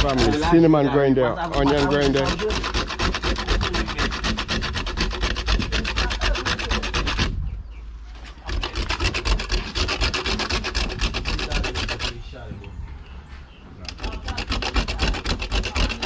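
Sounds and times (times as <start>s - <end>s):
spice grinding by hand rasping: 1.5s - 7.4s, 8.3s - 12.2s, 13.9s - 16.0s.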